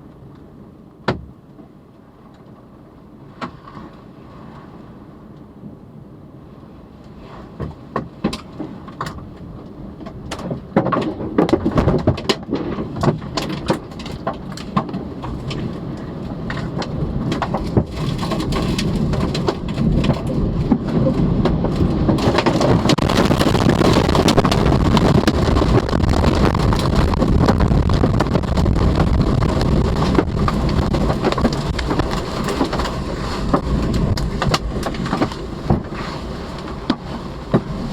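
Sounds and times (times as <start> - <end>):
debris and rain hitting a car: 8.0 - 37.9
tornado winds roaring: 9.3 - 37.9.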